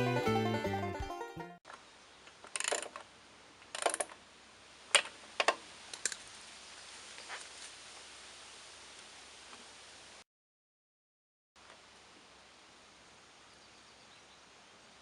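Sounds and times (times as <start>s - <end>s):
faint steady hiss: 1.7s - 10.2s, 11.6s - 15.0s.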